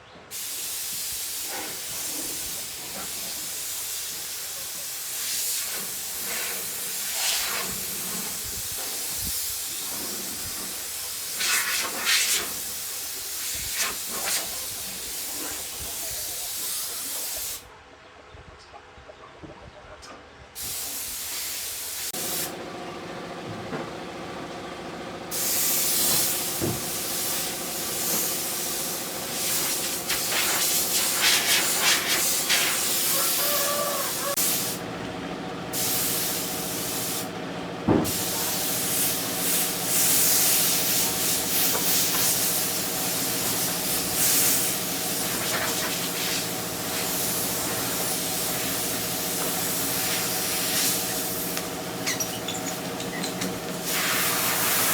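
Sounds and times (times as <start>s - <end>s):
pressurised spray hissing: 0.3s - 17.7s, 20.6s - 22.9s, 24.6s - 34.9s, 35.7s - 37.3s, 37.9s - 54.9s
machine humming: 22.2s - 33.1s, 34.3s - 54.9s.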